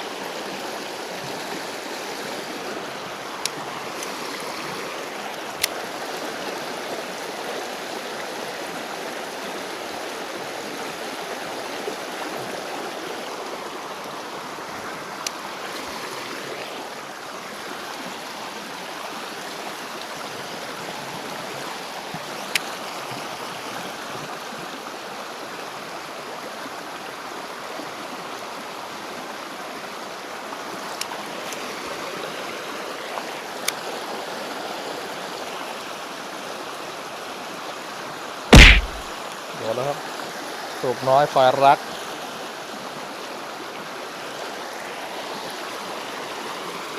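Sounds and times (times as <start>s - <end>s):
shallow stream flowing: 0.0s - 46.9s
brief sharp clicks: 38.5s - 39.0s.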